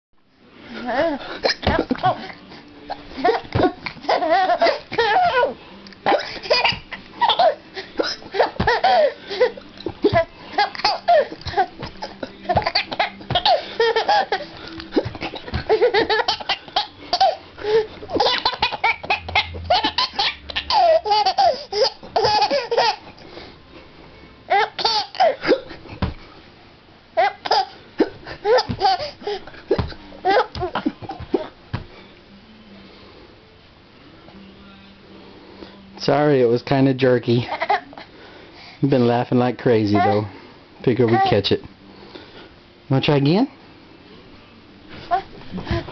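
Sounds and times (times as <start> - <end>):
baby laughing: 0.8 - 23.0, 24.5 - 25.5, 27.2 - 31.5, 37.4 - 38.0, 39.9 - 40.2, 41.1 - 41.4.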